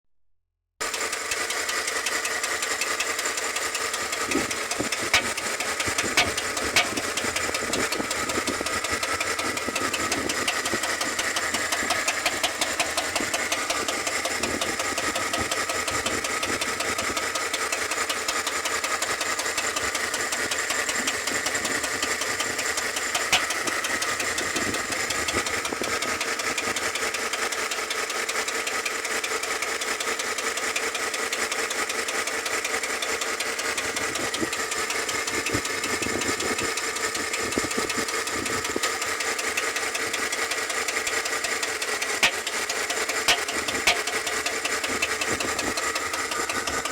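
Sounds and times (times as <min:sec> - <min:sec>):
car engine idling: 0:00.8 - 0:46.9
valve lifter ticking: 0:20.4 - 0:26.0, 0:42.2 - 0:46.9.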